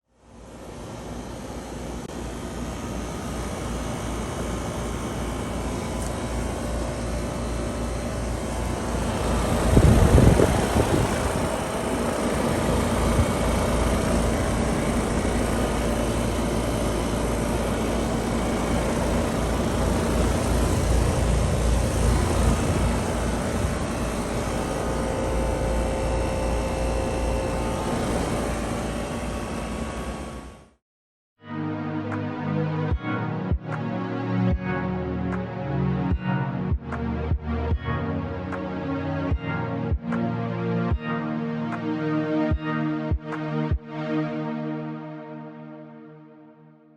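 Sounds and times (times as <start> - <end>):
compressor hum: 0.2 - 30.8
heat pump fan rushing: 0.2 - 30.8.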